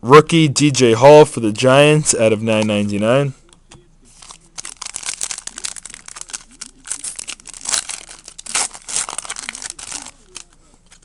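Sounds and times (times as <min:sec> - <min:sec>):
plastic packaging crinkling: 0:04.1 - 0:11.0.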